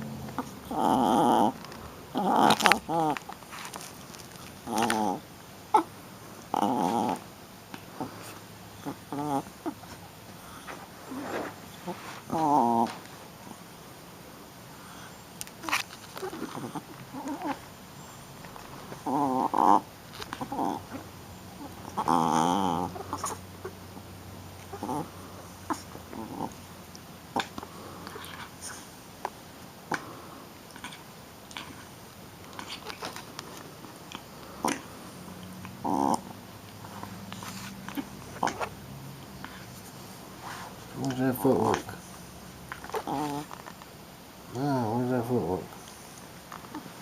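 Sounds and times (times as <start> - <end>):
puppy vocalizing: 0.0 - 3.4, 4.2 - 13.6, 15.6 - 23.9, 24.6 - 26.7, 29.9 - 38.8, 39.4 - 43.7.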